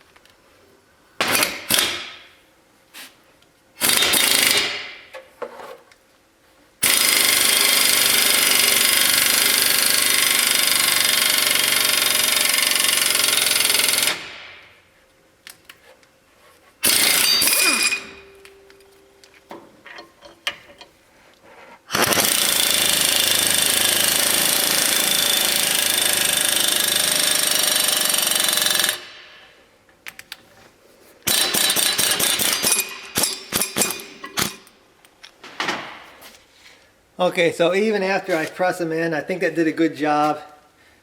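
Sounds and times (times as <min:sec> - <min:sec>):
air tool running: 0:06.8 - 0:14.4, 0:16.8 - 0:18.2, 0:21.9 - 0:29.3.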